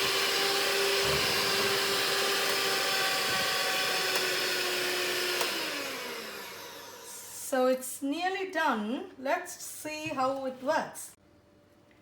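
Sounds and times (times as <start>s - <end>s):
electric mixer motor running: 0.0s - 7.4s.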